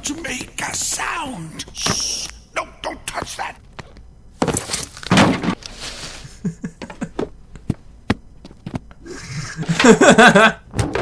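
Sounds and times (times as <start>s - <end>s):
person's voice: 0.0s - 3.6s
hiss: 1.8s - 2.4s.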